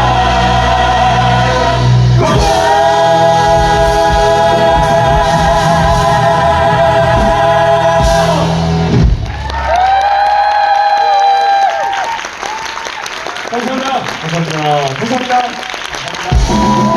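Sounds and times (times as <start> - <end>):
singers holding a chord: 0.0 - 9.2
live band playing: 0.0 - 9.8, 16.3 - 16.9.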